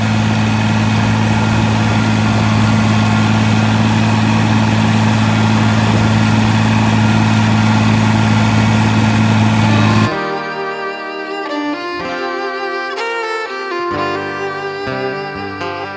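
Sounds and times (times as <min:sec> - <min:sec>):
deep even hum: 0:00.0 - 0:10.1
farm machinery engine running: 0:00.0 - 0:10.1
fiddle music: 0:00.0 - 0:15.9.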